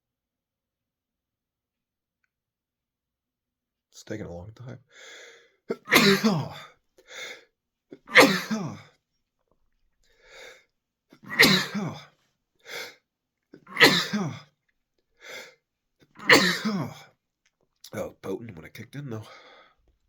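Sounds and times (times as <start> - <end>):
catching breath: 4.9 - 5.6, 7.0 - 7.5, 10.1 - 10.7, 19.3 - 19.9
man sneezing: 5.7 - 6.7, 8.0 - 8.9, 11.2 - 12.1, 13.6 - 14.5, 16.2 - 17.1.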